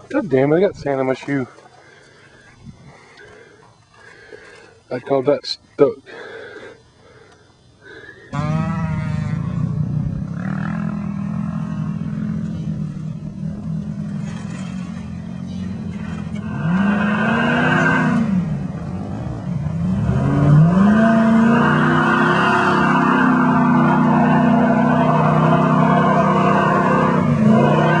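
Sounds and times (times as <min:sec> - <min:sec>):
vehicle engine revving: 0:08.3 - 0:28.0.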